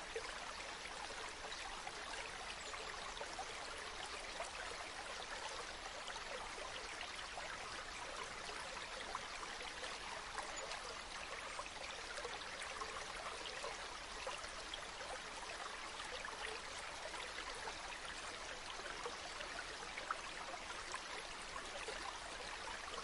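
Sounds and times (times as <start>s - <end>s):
stream flowing and splashing: 0.0s - 23.0s.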